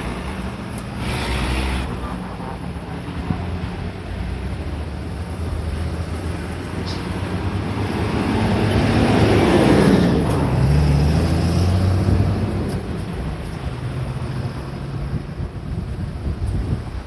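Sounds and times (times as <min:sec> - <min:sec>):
vehicle passing close by: 0:05.9 - 0:12.9.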